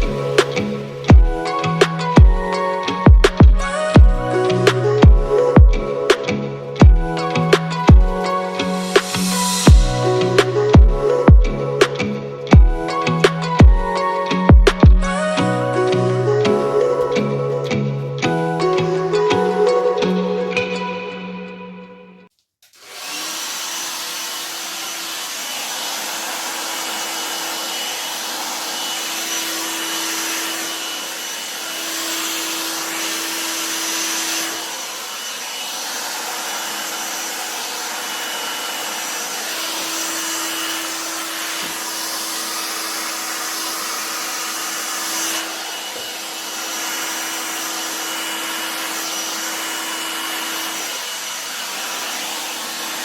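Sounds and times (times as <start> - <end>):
hairdryer running: 0.0 - 20.2, 22.6 - 53.0.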